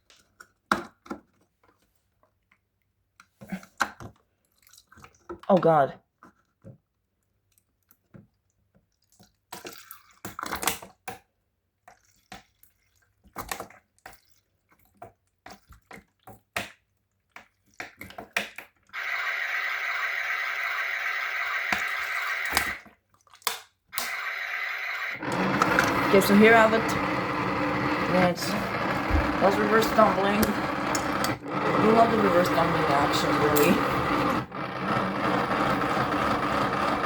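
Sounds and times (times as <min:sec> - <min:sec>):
toy washing machine motor: 0:19.0 - 0:22.8, 0:24.0 - 0:37.0.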